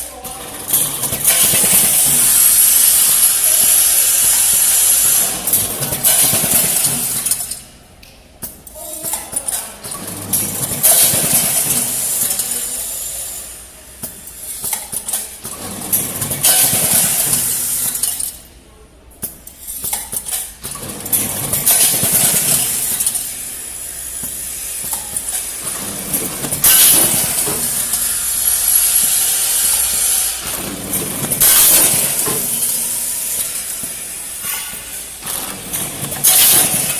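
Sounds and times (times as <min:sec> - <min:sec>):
machine hissing: 0:00.5 - 0:07.6, 0:19.7 - 0:36.9.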